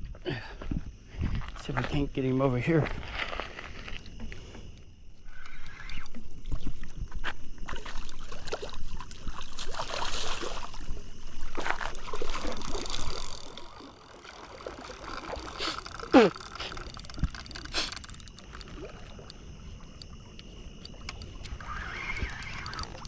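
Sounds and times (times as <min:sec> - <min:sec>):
fish thrashing in water: 0:07.6 - 0:19.3.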